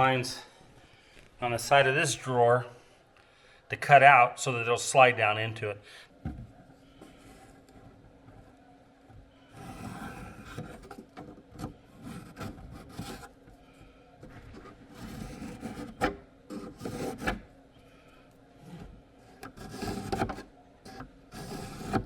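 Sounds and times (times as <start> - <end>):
pencil scraping on wood: 9.5 - 13.4, 14.5 - 17.5, 18.7 - 22.0.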